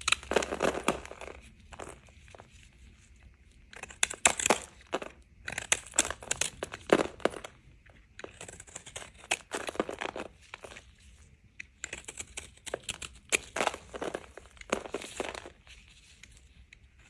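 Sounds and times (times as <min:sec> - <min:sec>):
knife cutting through soap: 0:08.2 - 0:10.8, 0:11.7 - 0:17.0.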